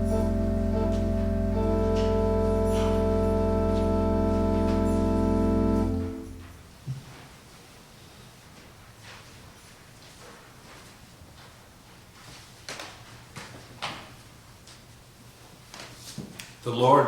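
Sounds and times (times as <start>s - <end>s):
church organ chord: 0.0s - 6.7s.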